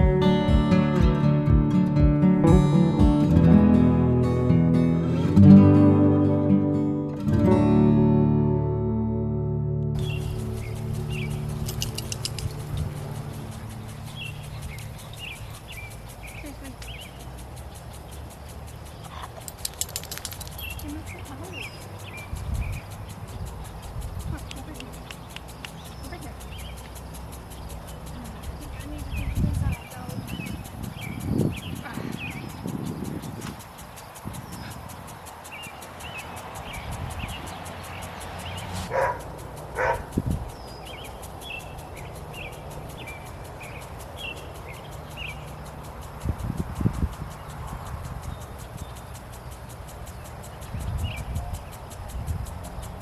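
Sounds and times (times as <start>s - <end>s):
low wind rumble: 3.2s - 19.0s, 21.5s - 53.0s
small birds chirping: 9.8s - 53.0s
sharp clicks: 9.9s - 53.0s
dog barking: 38.9s - 40.2s.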